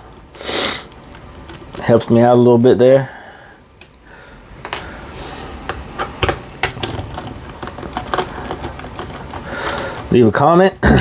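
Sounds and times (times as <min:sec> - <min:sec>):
clicks and taps of small parts: 0:04.6 - 0:04.9.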